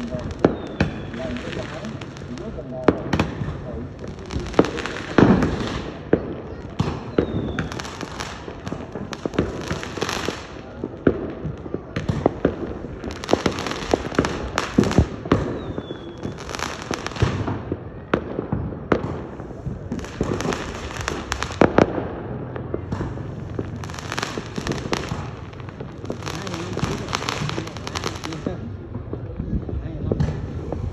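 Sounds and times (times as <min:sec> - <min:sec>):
fireworks hiss: 0:00.0 - 0:06.1, 0:22.9 - 0:28.7
fireworks bangs and crackling: 0:00.0 - 0:30.9
falling whistles from shells: 0:00.4 - 0:01.4, 0:07.1 - 0:07.8, 0:15.5 - 0:16.4.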